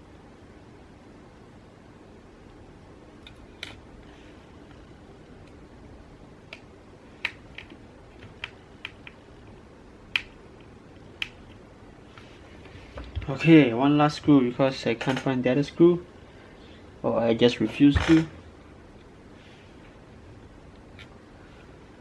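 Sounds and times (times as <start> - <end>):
small sharp clicks and taps: 10.1 - 11.6.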